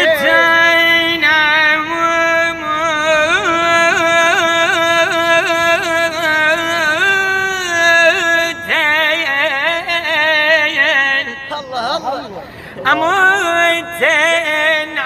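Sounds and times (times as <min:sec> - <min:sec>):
person singing ornamented notes: 0:00.0 - 0:01.3.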